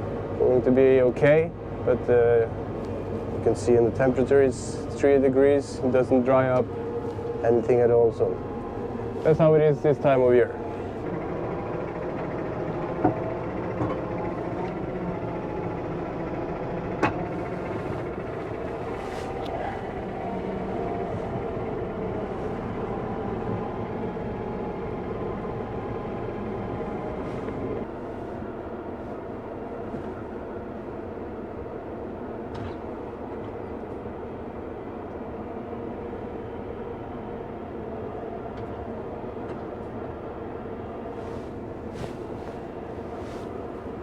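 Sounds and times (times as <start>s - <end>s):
heavy vehicle engine rumble: 0.0s - 44.0s.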